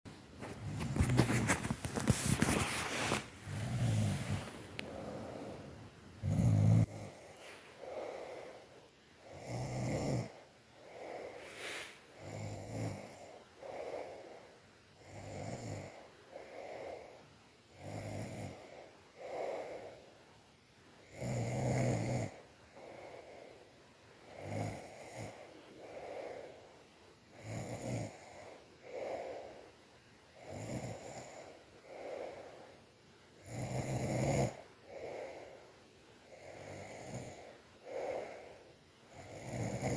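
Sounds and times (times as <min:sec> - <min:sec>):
soft breathy snores: 0:00.4 - 0:20.4, 0:21.0 - 0:39.9
loud low snore: 0:03.1 - 0:08.5, 0:09.3 - 0:10.4, 0:11.0 - 0:13.3, 0:15.0 - 0:16.0, 0:17.7 - 0:18.7, 0:21.1 - 0:22.4, 0:24.3 - 0:25.5, 0:27.4 - 0:28.5, 0:30.4 - 0:31.5, 0:33.4 - 0:35.3, 0:36.3 - 0:38.5, 0:39.1 - 0:39.9.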